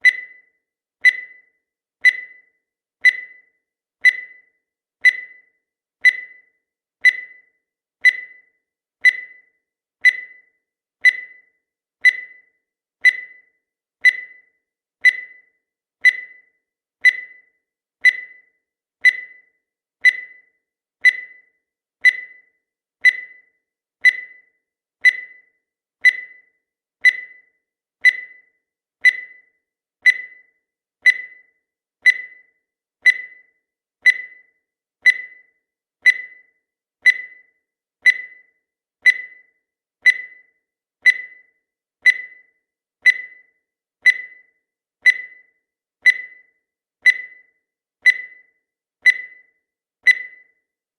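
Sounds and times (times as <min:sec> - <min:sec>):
short high beeps: 0:50.1 - 0:50.5.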